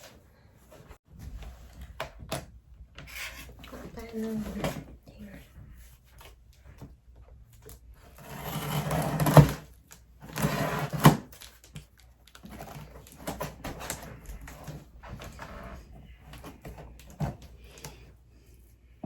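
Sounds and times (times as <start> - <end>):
cardboard box scraping: 8.1 - 11.3.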